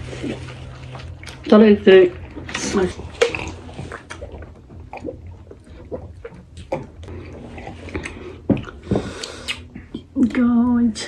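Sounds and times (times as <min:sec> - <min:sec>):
person chewing food: 0:00.0 - 0:10.2
low steady hum: 0:00.0 - 0:11.0
mouth clicks and smacks: 0:02.2 - 0:10.2.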